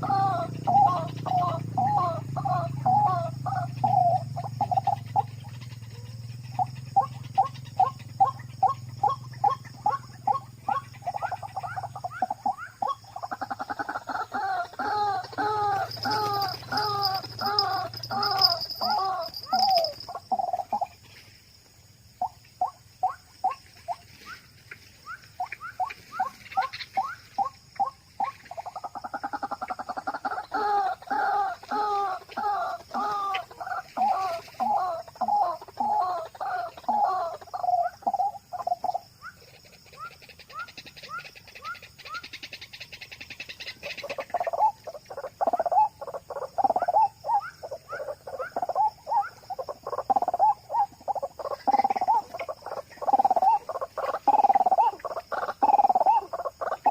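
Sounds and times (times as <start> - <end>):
waterhen harsh calls: 7.0 - 20.2.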